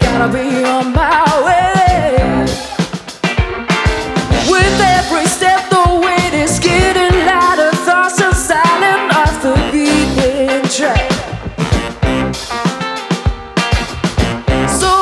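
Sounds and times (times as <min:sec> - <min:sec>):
person singing lead melody: 0:00.0 - 0:03.0, 0:04.3 - 0:11.4, 0:14.5 - 0:15.0
live band playing a song: 0:00.0 - 0:15.0
drum hits: 0:01.9 - 0:08.7, 0:11.0 - 0:14.7.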